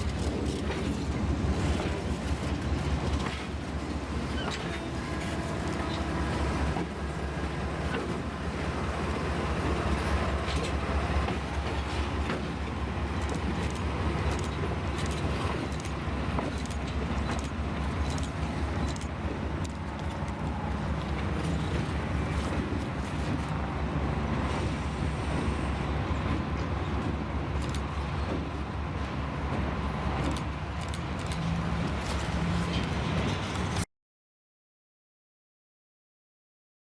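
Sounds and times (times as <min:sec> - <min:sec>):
train rumbling on rails: 0:00.0 - 0:33.9.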